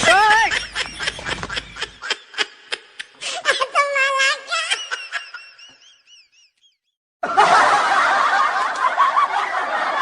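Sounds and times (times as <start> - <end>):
many voices laughing together: 0.1 - 3.1, 7.2 - 10.0
laughter with wavering high notes: 0.1 - 3.2.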